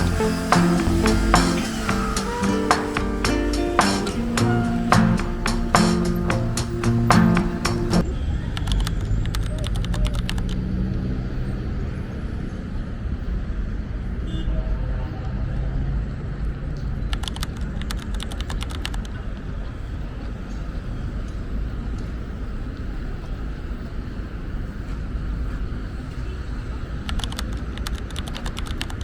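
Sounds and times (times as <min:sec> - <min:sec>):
vehicle engine humming: 0:00.0 - 0:08.0.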